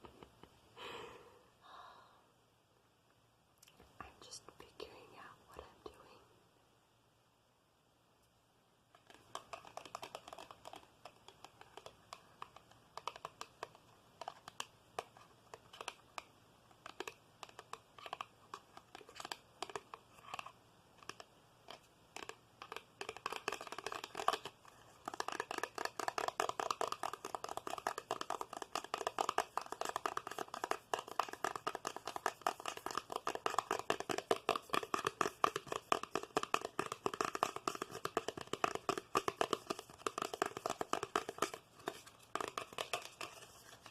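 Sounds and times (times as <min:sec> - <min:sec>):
tapping and scratching: 0:08.9 - 0:43.9.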